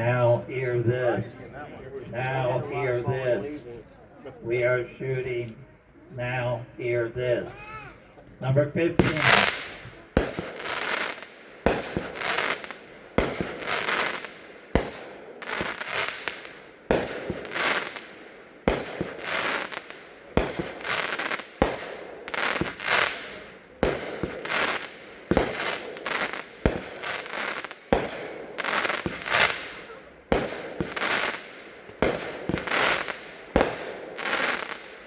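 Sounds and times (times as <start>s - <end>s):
firework bursts: 8.9s - 35.0s
firework launch bangs: 9.0s - 35.0s.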